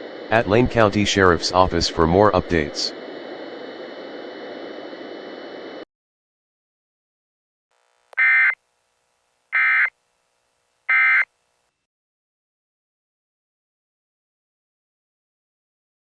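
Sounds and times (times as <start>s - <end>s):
radio static hiss: 0.0s - 5.8s, 7.7s - 11.7s
digital data tone bursts: 8.2s - 8.6s, 9.6s - 9.9s, 10.9s - 11.3s.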